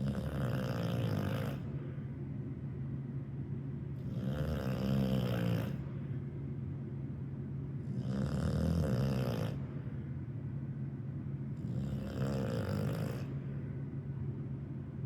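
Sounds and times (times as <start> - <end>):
rattling snores: 0.0 - 1.6, 4.0 - 5.8, 7.9 - 9.6, 11.6 - 13.3.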